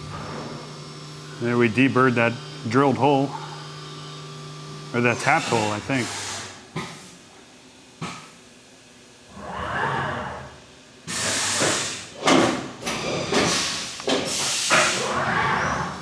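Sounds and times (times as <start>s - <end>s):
cnc mill machine motion: 0.0s - 6.6s
loud hissing bursts: 5.0s - 6.6s, 11.1s - 12.2s, 13.1s - 15.1s.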